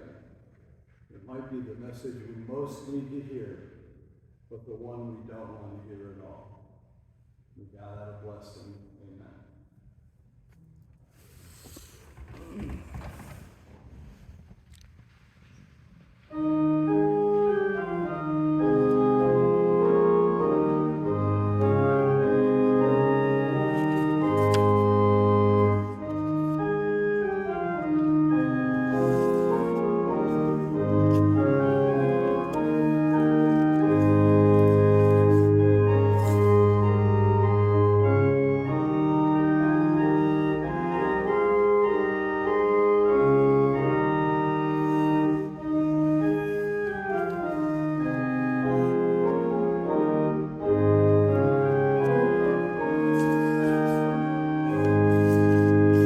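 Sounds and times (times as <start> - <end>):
church organ chords: 16.3 - 56.0.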